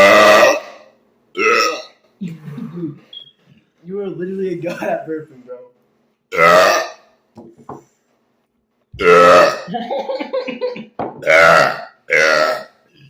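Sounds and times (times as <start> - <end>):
man burping loudly: 0.0 - 2.0, 6.3 - 7.0, 9.0 - 9.7, 11.2 - 12.8.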